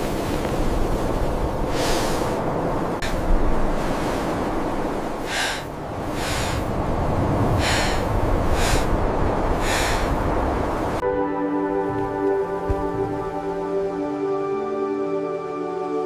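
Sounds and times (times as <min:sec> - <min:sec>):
steady wind noise: 0:00.0 - 0:16.0
soft music: 0:11.0 - 0:16.0.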